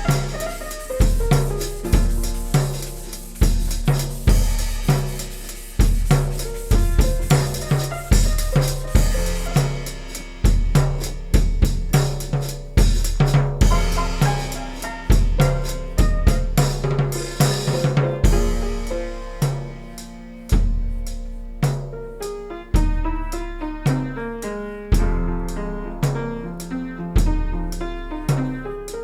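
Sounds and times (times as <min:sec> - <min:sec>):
drum-kit beat: 0:00.0 - 0:24.2, 0:24.9 - 0:29.0
deep bass line: 0:06.0 - 0:19.5.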